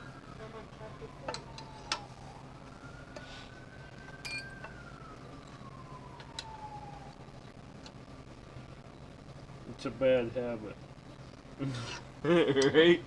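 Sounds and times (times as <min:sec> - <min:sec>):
siren wailing: 0:00.0 - 0:07.7
low steady hum: 0:00.0 - 0:13.0.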